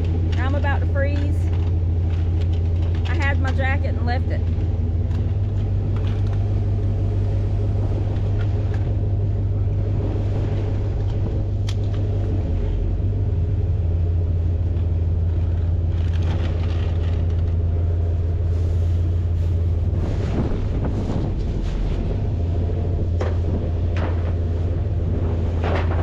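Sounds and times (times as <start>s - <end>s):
vehicle engine idling: 0.0s - 26.0s.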